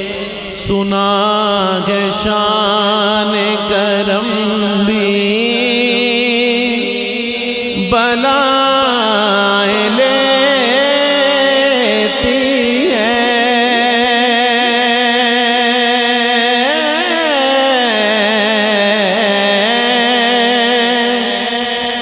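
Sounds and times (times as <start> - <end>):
held vocal drone: 0.0 - 22.0
man singing melismatic melody: 0.0 - 22.0.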